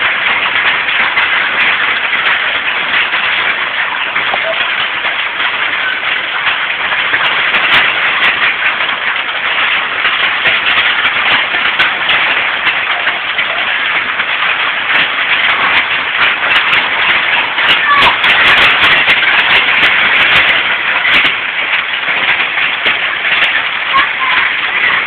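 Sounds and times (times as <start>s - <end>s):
hail clattering: 0.0s - 25.0s.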